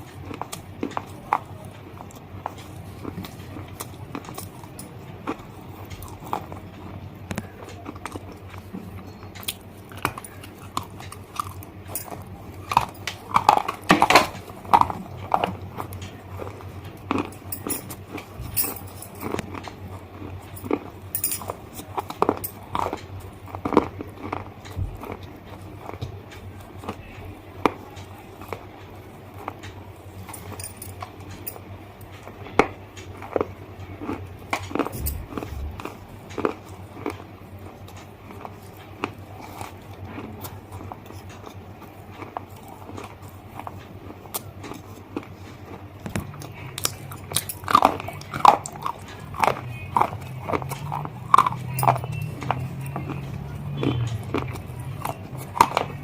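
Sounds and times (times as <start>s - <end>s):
crunching bites of hard bars: 0.0s - 31.4s
quiet chewing: 0.0s - 56.0s.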